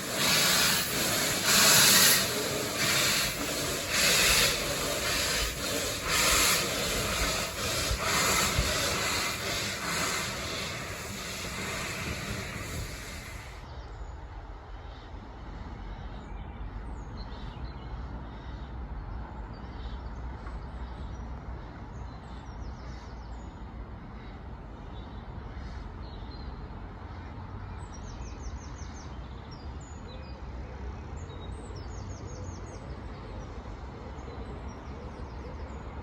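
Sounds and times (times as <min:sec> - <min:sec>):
birds chirping: 0:00.0 - 0:13.6
steam locomotive hissing: 0:00.0 - 0:13.7.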